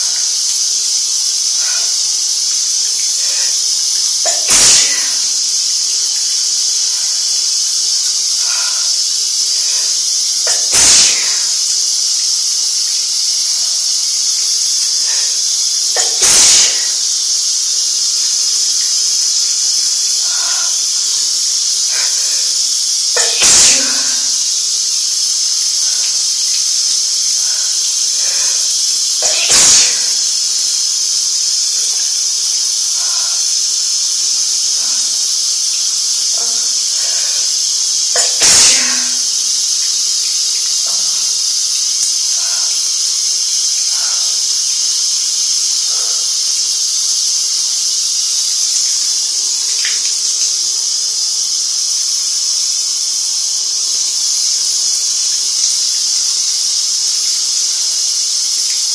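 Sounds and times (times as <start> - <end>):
shower spray hissing: 0.0 - 58.9
woman sneezing: 4.3 - 5.4, 10.5 - 11.6, 23.2 - 24.4, 28.2 - 30.3, 38.2 - 39.3.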